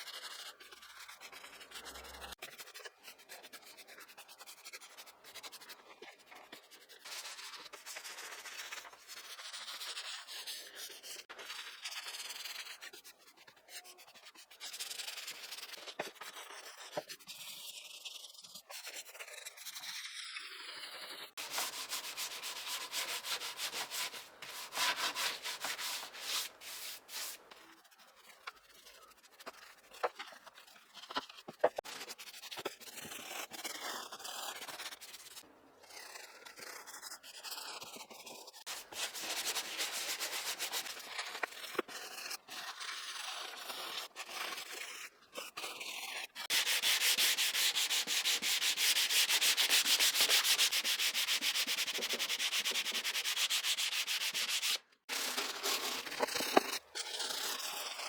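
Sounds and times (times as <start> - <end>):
hand sanding scratchy strokes: 21.4 - 30.1, 38.7 - 41.1, 46.4 - 56.6.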